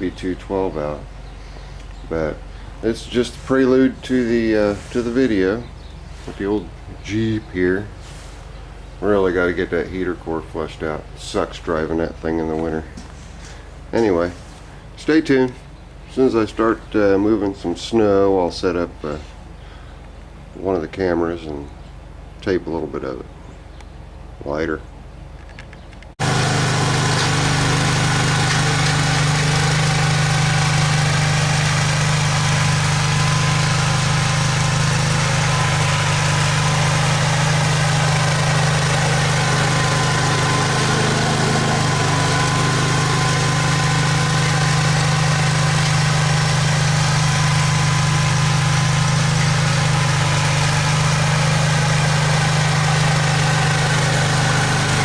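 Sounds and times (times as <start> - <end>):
snow-clearing machine engine running: 0.0 - 17.0, 26.2 - 55.0.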